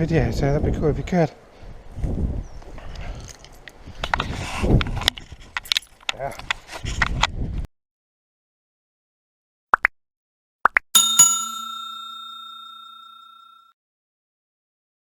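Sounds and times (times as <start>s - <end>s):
bell ding: 11.0s - 13.7s.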